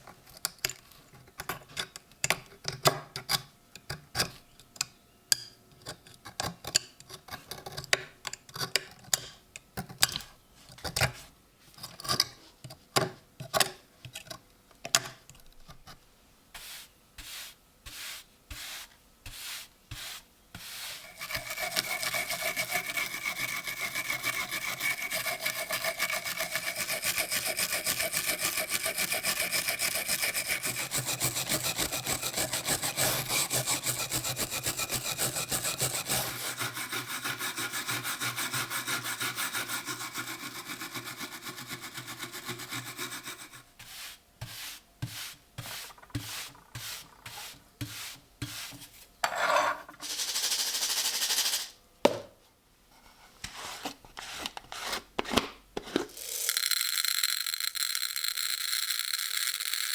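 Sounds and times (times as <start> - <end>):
sharp tool strokes on metal: 16.6 - 48.8
steady scraping or sawing: 16.6 - 49.0.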